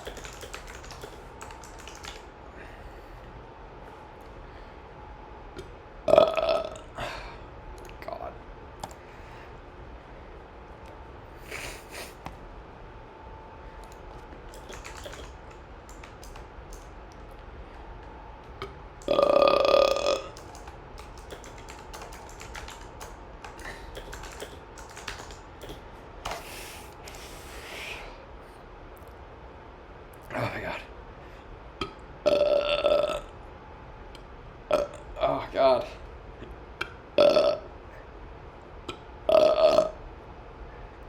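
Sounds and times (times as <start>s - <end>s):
keyboard typing clicks: 0.0s - 2.3s, 13.8s - 17.4s, 20.2s - 26.4s
person burping: 6.1s - 7.0s, 19.1s - 20.3s, 32.3s - 33.3s, 37.2s - 37.7s, 39.3s - 40.0s.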